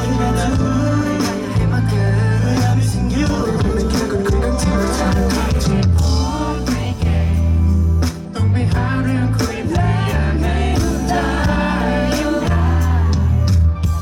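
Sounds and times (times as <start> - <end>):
person singing: 0.0 - 7.5
drums: 0.0 - 14.0
heavy bass line: 0.0 - 14.0
live band music: 0.0 - 14.0.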